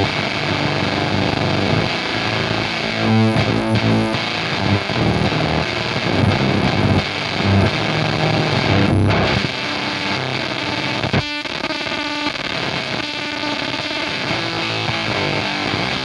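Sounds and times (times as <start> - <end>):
fuzz-distorted electric guitar: 0.0 - 16.0.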